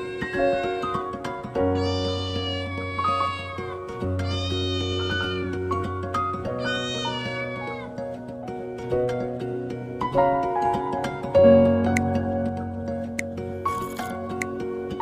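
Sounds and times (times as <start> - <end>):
cat meowing: 0.0 - 1.1, 1.7 - 5.8, 6.6 - 7.9
gentle background music: 0.0 - 15.0.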